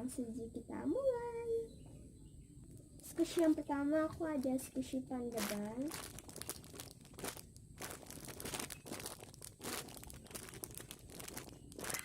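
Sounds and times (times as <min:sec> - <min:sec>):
plastic packaging crinkling: 0:03.0 - 0:12.0.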